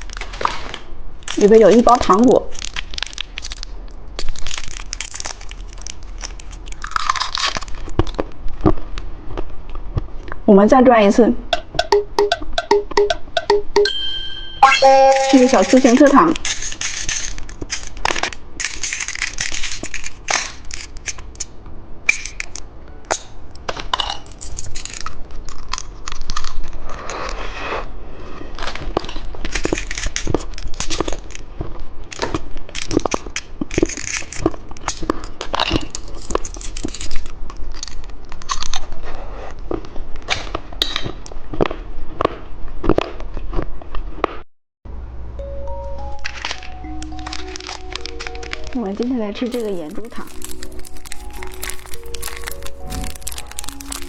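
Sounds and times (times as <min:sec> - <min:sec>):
plastic packaging crinkling and tearing: 0:00.0 - 0:10.2, 0:15.4 - 0:27.1, 0:28.6 - 0:39.0, 0:46.3 - 0:54.0
sharp clicks and crunches: 0:00.0 - 0:10.4, 0:15.8 - 0:27.4, 0:28.6 - 0:39.0, 0:49.5 - 0:54.0.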